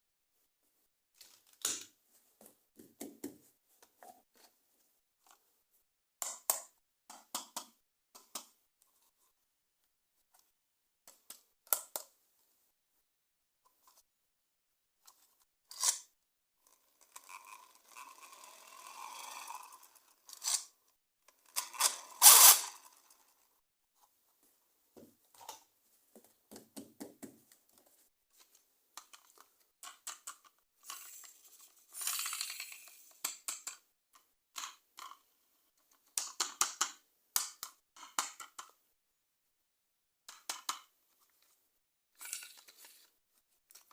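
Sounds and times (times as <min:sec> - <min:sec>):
toy packaging being opened: 0:21.3 - 0:23.4, 0:42.2 - 0:43.1.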